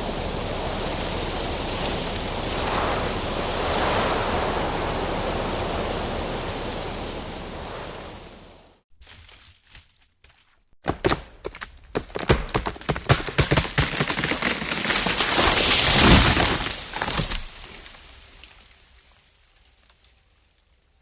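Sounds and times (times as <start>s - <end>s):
tree crashing down: 11.9s - 19.4s
tree branches cracking: 12.1s - 20.8s.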